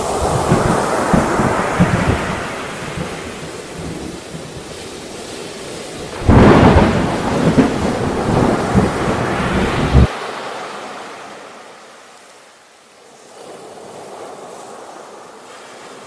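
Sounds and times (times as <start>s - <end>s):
thunderclap rumbling: 0.0s - 10.1s
rain hiss: 0.0s - 16.0s.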